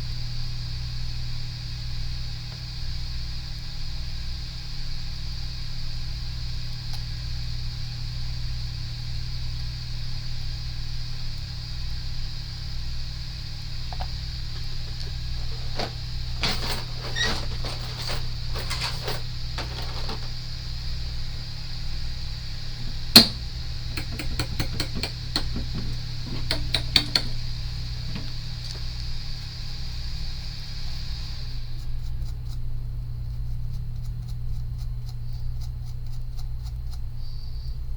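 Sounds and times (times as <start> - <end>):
electrical hum and hiss: 0.0 - 37.9
metal tools clicking on circuit board: 23.2 - 27.4.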